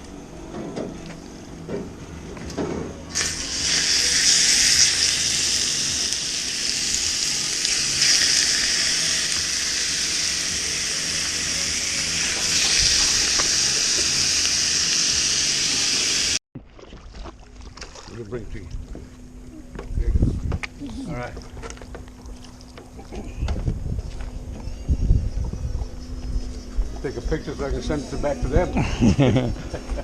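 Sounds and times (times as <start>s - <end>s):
food sizzling in hot oil: 3.1s - 16.4s.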